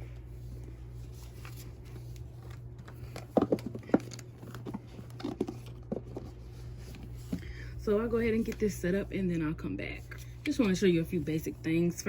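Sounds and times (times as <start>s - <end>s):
steady low hum: 0.0s - 12.0s
box contents clicks and taps: 2.8s - 6.3s.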